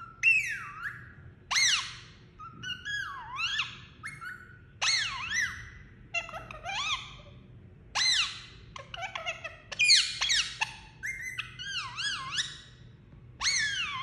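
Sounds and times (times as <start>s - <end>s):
parakeet squawks and whistles: 0.0s - 14.0s.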